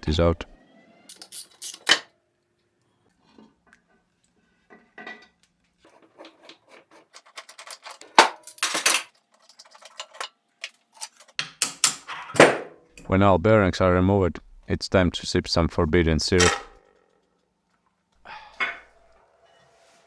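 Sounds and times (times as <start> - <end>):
steel parts clinking and knocking: 1.1 - 2.1, 5.9 - 12.1, 16.4 - 16.8.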